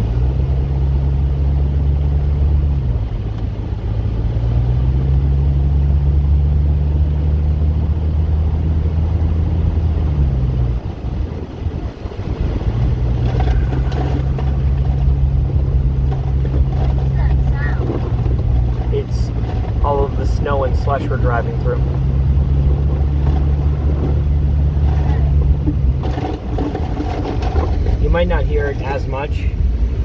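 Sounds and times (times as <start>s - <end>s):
diesel engine droning: 0.0s - 30.0s
tyres through snow and slush: 10.7s - 30.0s.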